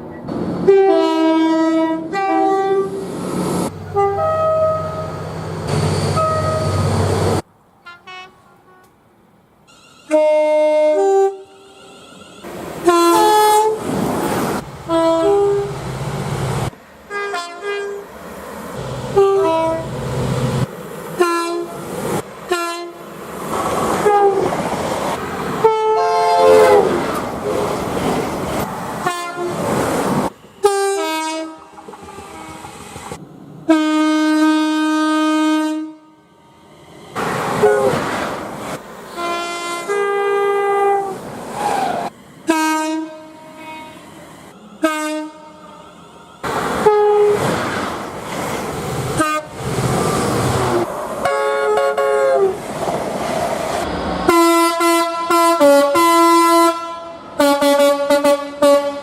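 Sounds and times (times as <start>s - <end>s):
train rumbling on rails: 0.0s - 7.5s, 10.9s - 59.0s
train horn blasts: 0.6s - 3.0s, 3.9s - 7.0s, 7.8s - 8.9s, 10.0s - 11.9s, 12.8s - 13.8s, 14.9s - 15.8s, 17.1s - 18.0s, 19.1s - 19.9s, 21.2s - 21.8s, 22.5s - 23.0s, 24.0s - 24.5s, 25.6s - 27.1s, 29.0s - 29.6s, 30.6s - 32.7s, 33.7s - 36.7s, 37.6s - 38.0s, 39.1s - 41.2s, 42.4s - 44.1s, 44.7s - 46.0s, 46.8s - 47.5s, 49.2s - 49.6s, 51.2s - 52.6s, 54.3s - 59.0s.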